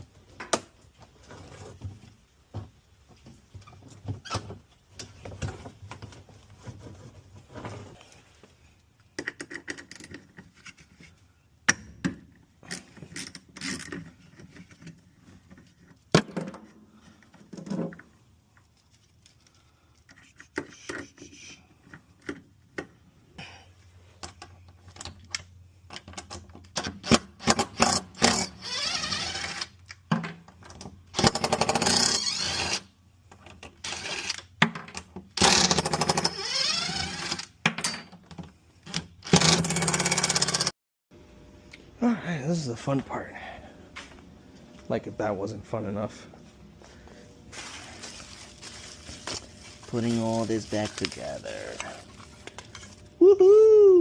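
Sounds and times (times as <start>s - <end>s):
rattling tool work: 30.6s - 40.7s.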